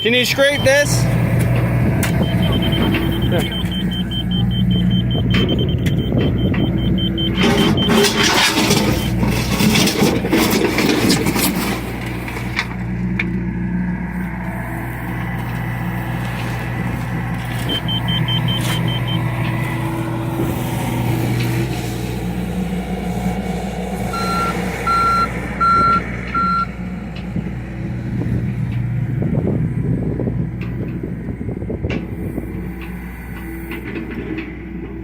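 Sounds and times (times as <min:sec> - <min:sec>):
backup alarm beeps: 0:00.0 - 0:01.0, 0:02.0 - 0:09.2, 0:17.7 - 0:19.3, 0:24.2 - 0:26.7
diesel engine running: 0:00.0 - 0:35.0.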